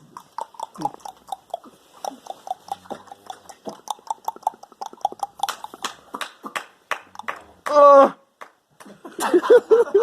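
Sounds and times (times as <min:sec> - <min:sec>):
short clicks and pops: 0:02.0 - 0:06.1.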